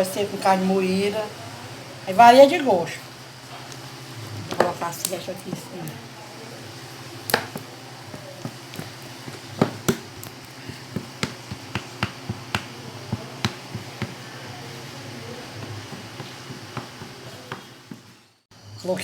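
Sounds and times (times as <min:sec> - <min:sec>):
utensil knocking on a container: 0:10.7 - 0:14.6.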